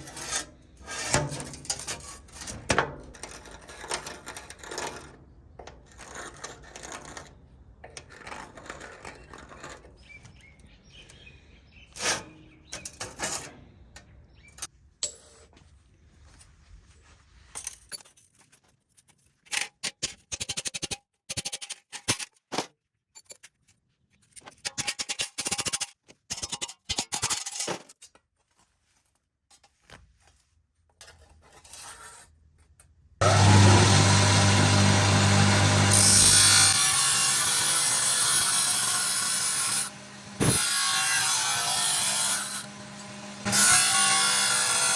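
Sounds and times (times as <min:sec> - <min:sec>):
scraping strokes on metal: 0:00.0 - 0:05.0, 0:11.9 - 0:13.7, 0:33.3 - 0:44.9
machine humming: 0:33.2 - 0:38.0, 0:38.7 - 0:44.9.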